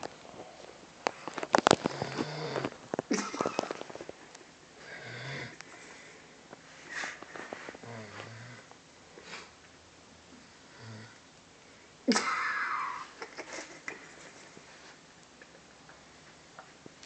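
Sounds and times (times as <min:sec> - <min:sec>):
snoring with buzzing rasp: 0:01.8 - 0:02.8, 0:04.8 - 0:05.6, 0:07.8 - 0:08.7, 0:10.6 - 0:11.2.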